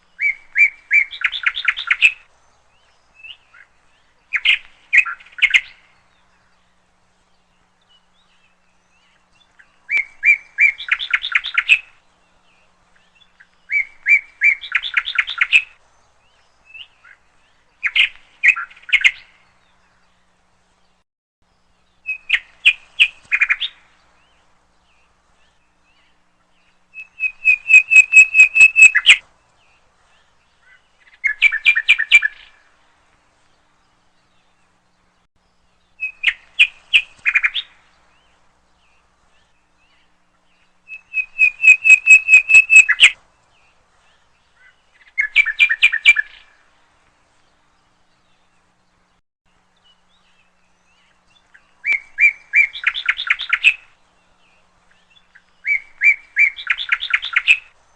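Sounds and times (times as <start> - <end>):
songbird whistling phrases: 0.2 - 2.2, 26.9 - 29.2, 40.9 - 43.2, 51.8 - 53.8, 55.6 - 57.7.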